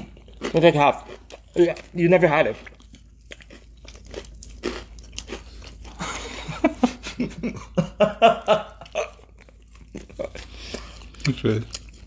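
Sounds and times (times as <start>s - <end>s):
crunchy chewing of food: 0.0s - 6.6s, 8.7s - 12.0s.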